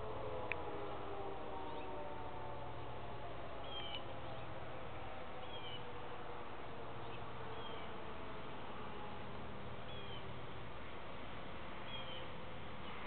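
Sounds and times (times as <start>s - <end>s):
warning siren wailing: 0.0s - 10.4s.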